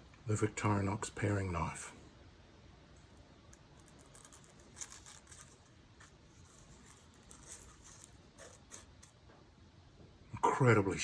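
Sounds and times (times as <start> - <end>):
knife cutting scratches: 3.9 - 9.2.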